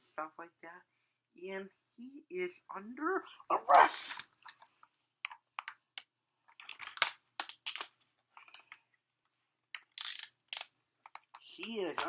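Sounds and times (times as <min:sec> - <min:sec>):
metal handcuffs clicking: 0:06.7 - 0:08.8, 0:09.8 - 0:10.8.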